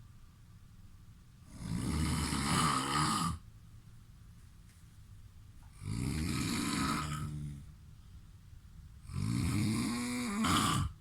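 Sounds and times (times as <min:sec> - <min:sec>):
man snoring loudly: 0:01.5 - 0:03.4, 0:05.8 - 0:07.6, 0:09.1 - 0:11.0.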